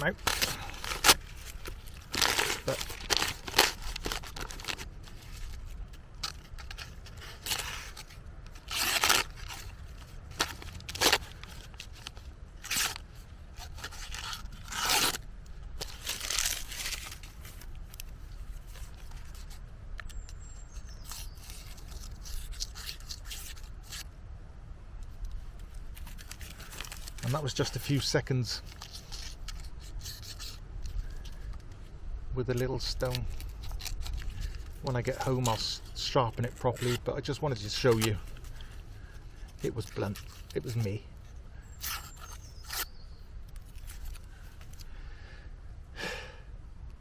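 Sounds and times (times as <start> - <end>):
knife blade scraping: 41.7 - 44.2.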